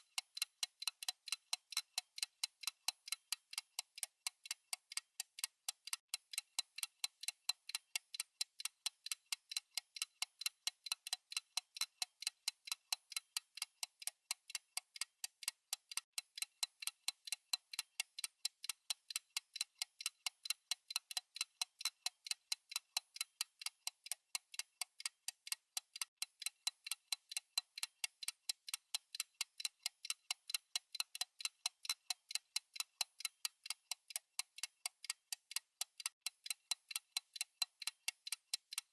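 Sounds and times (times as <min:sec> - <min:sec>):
clock ticking: 0:00.0 - 0:38.9.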